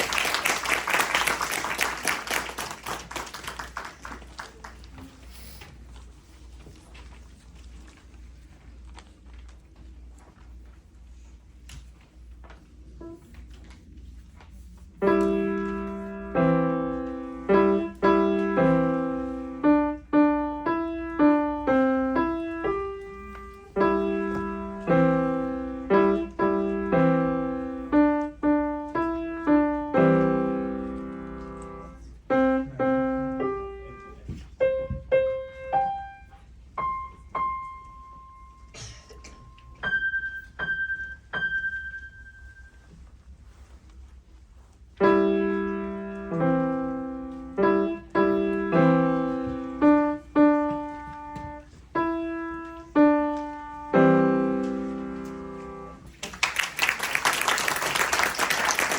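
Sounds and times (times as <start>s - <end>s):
piano playing simple tune: 15.0s - 42.9s, 45.0s - 56.1s.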